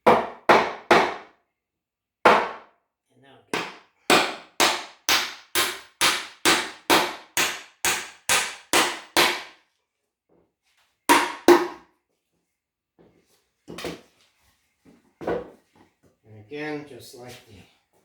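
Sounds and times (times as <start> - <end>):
hammer nailing into wood: 0.0 - 1.3, 2.3 - 2.7, 3.5 - 9.6, 11.1 - 11.9.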